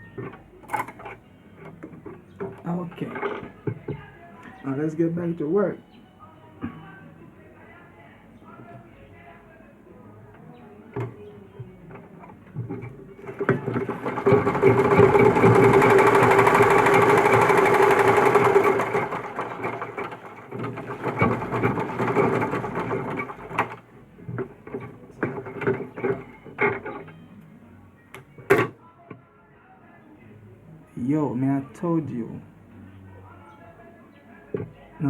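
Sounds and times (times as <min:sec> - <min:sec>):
sewing machine clicks: 0:11.9 - 0:27.1
sewing machine stitching: 0:11.9 - 0:27.2.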